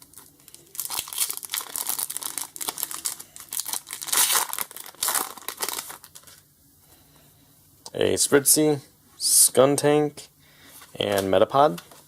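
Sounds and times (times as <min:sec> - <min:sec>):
wrapper crinkling and tearing: 0:00.0 - 0:06.4.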